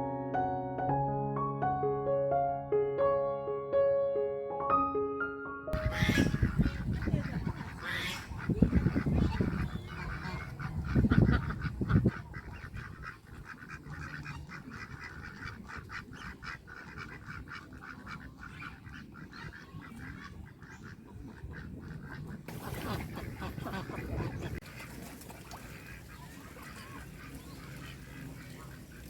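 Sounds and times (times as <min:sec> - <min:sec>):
waterfowl honking: 0:05.8 - 0:29.0.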